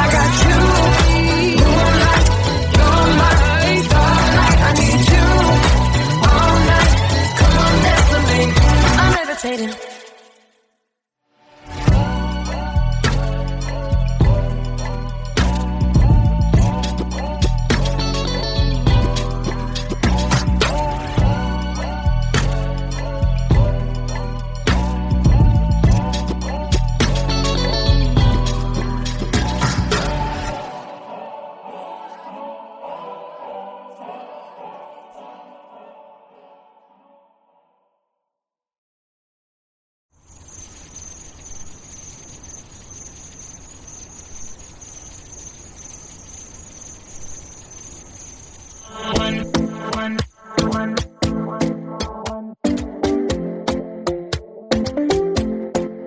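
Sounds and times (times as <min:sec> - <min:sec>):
heavy drum beat: 0:00.0 - 0:09.2
cricket chorus chirring: 0:40.2 - 0:50.4.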